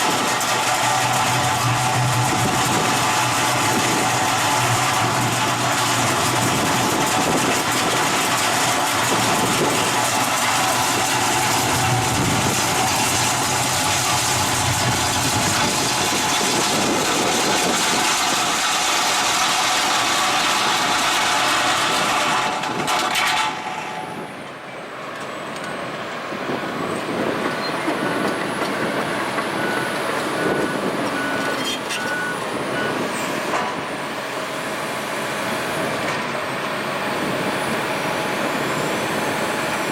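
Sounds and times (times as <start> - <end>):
saw cutting stone: 0.0 - 23.8
engine and machine noise: 0.0 - 39.9.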